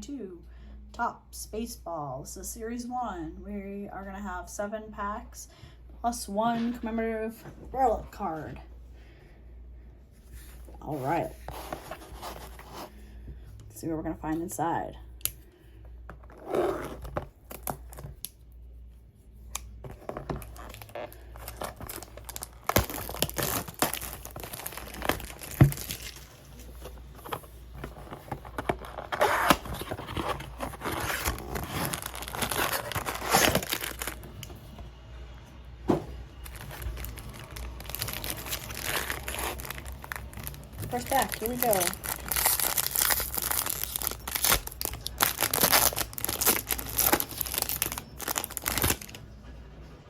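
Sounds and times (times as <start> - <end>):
plastic wrapping tearing and crinkling: 16.3 - 18.2, 19.9 - 34.5, 36.4 - 49.2.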